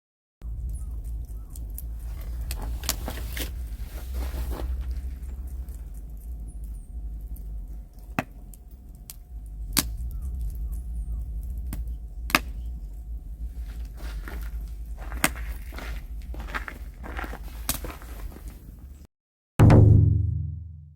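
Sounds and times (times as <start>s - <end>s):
faint chirps: 0.4s - 16.4s.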